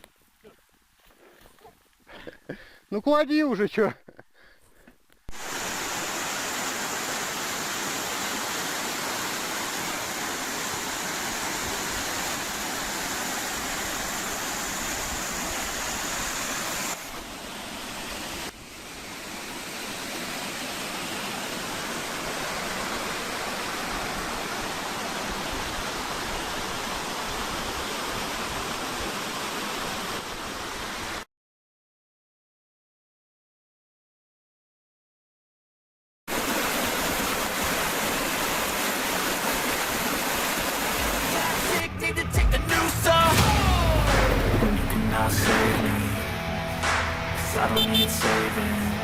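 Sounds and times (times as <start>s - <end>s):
waterfall rushing: 5.3s - 31.2s, 36.3s - 49.0s.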